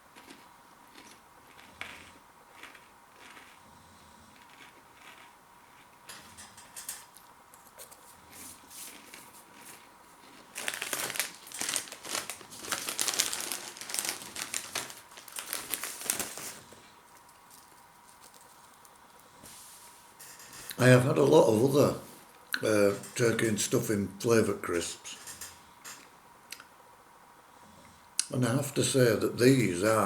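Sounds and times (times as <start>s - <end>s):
plastic crisp packet crinkling: 0.2s - 3.6s, 6.9s - 19.3s.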